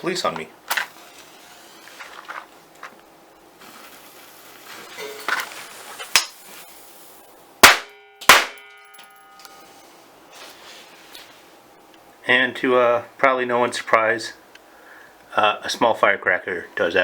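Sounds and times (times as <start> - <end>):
firecracker bangs: 7.6 - 8.7
metallic ringing: 7.6 - 10.0.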